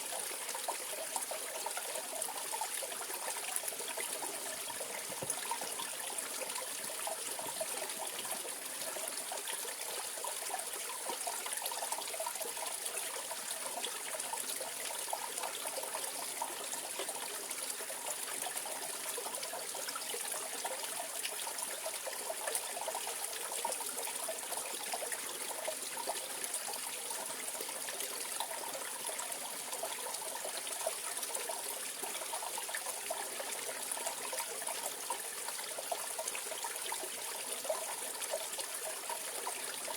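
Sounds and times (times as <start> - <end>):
stream water trickling and gurgling: 0.0 - 39.9.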